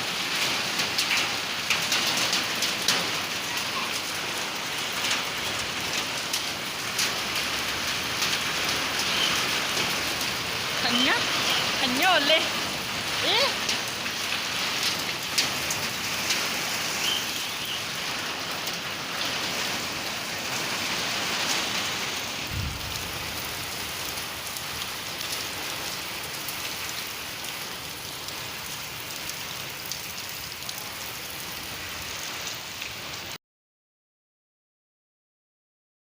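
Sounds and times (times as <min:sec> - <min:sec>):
heavy rain pouring: 0:00.0 - 0:33.4
low thump: 0:22.5 - 0:23.5.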